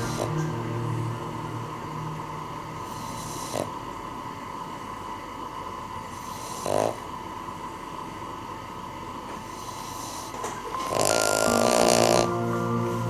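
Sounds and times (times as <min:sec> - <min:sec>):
dog snoring: 0:00.0 - 0:00.5, 0:02.8 - 0:03.8, 0:06.1 - 0:07.1, 0:09.4 - 0:13.0
faint steady hum: 0:00.0 - 0:13.0.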